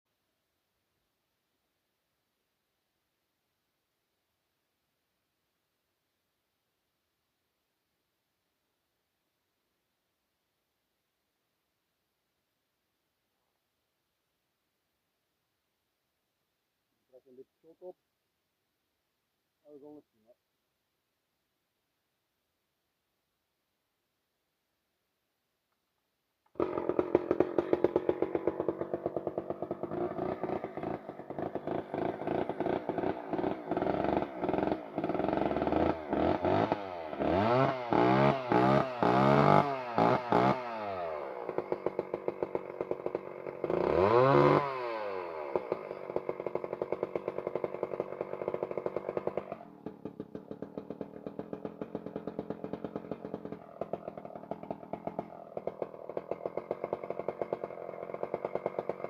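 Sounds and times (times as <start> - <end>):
chainsaw idling and revving: 26.4 - 59.0.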